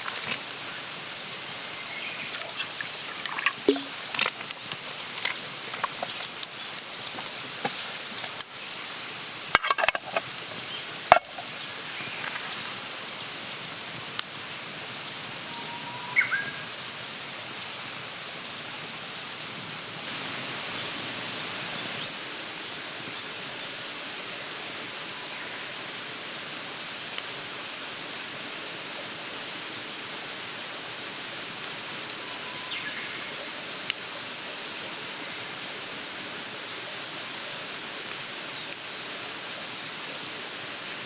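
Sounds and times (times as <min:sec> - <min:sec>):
campfire crackling and popping: 0:00.0 - 0:13.3, 0:20.0 - 0:21.4, 0:23.0 - 0:25.0, 0:33.8 - 0:34.1, 0:38.0 - 0:39.0
steady hiss: 0:00.0 - 0:41.0.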